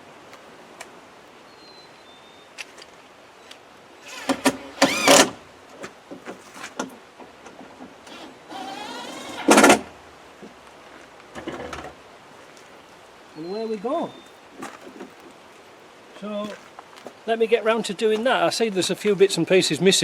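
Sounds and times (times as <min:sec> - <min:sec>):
cordless drill whirring: 0:04.0 - 0:05.4, 0:08.1 - 0:09.9.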